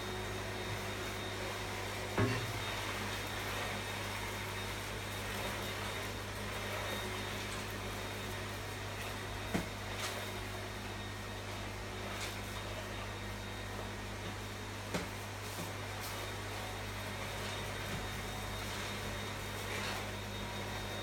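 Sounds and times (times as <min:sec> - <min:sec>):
vacuum cleaner running: 0:00.0 - 0:21.0.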